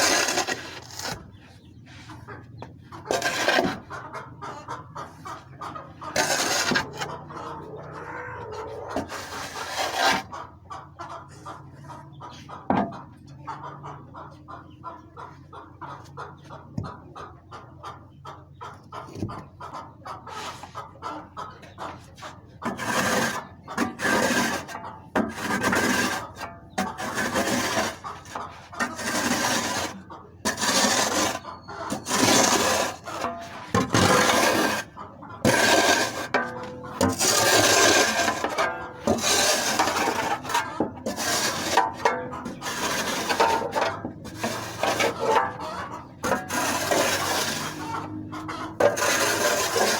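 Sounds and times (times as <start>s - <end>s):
loud rough scraping strokes: 0.0s - 1.2s, 3.1s - 3.9s, 6.1s - 10.3s, 22.7s - 49.9s
chickens clucking: 0.0s - 49.9s.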